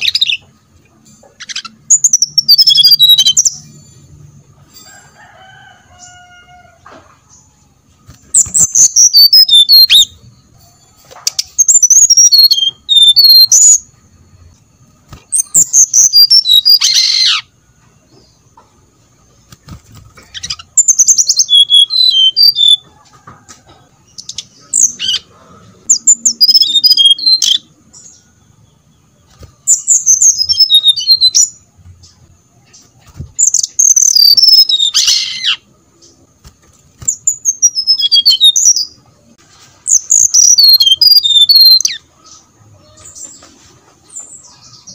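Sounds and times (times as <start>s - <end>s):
bird whistling song: 1.4s - 3.7s, 8.2s - 10.2s, 11.4s - 13.9s, 15.3s - 17.5s, 20.3s - 22.8s, 25.9s - 28.2s, 29.6s - 31.6s, 33.4s - 35.6s, 37.0s - 39.0s, 39.9s - 42.0s.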